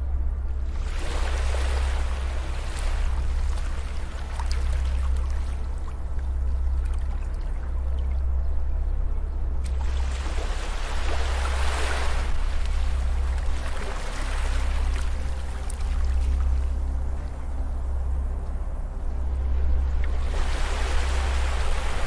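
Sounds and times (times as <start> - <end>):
steady deep rumble: 0.0 - 22.0
ocean waves washing onto beach: 9.7 - 16.6, 19.9 - 22.0.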